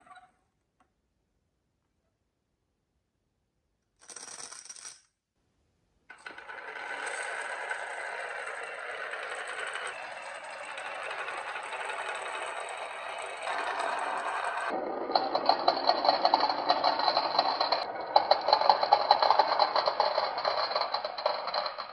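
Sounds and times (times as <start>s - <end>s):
marbles rolling on track: 4.0s - 5.0s, 6.1s - 21.9s.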